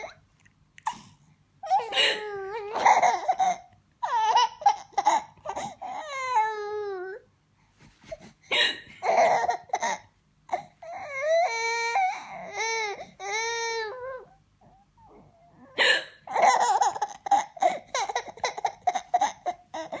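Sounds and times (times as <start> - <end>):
baby laughing: 1.7 - 5.8, 8.6 - 10.7, 15.8 - 20.0.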